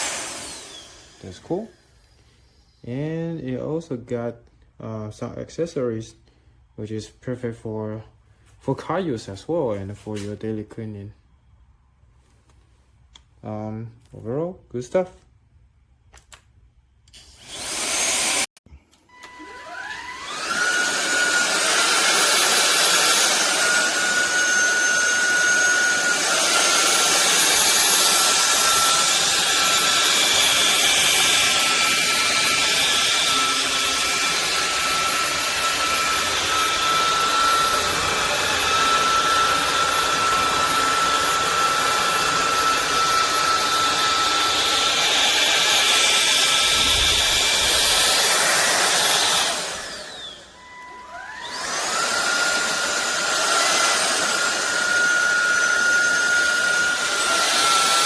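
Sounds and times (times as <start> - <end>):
vacuum motor whine: 0.0 - 1.4, 17.2 - 58.0.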